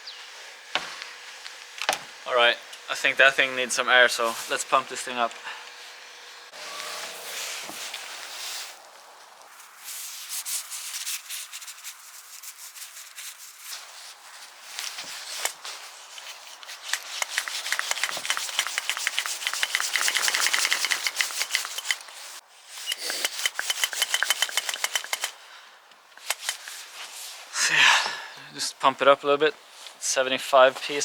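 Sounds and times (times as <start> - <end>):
hand pump strokes: 14.7 - 25.4, 26.2 - 26.9.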